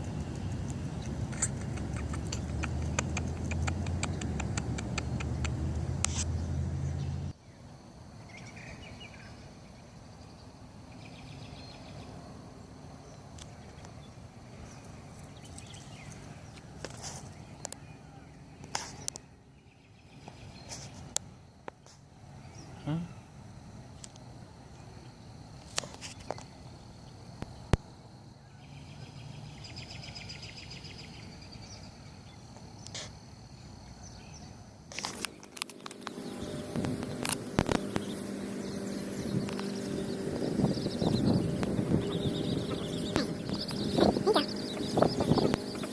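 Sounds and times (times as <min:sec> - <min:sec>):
birds chirping: 0:00.0 - 0:07.3, 0:35.1 - 0:45.9
steady low hum: 0:00.0 - 0:45.9
sharp click: 0:01.3 - 0:06.4
high insect buzzing: 0:35.1 - 0:45.9
rapid bird trill: 0:35.3 - 0:45.9.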